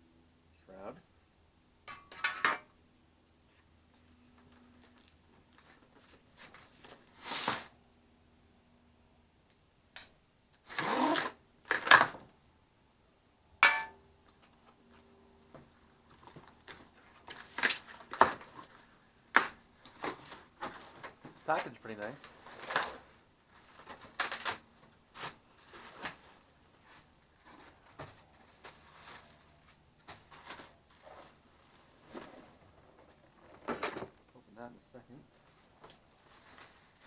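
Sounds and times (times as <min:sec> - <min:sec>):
packaging rustling and tearing: 0:16.2 - 0:31.3.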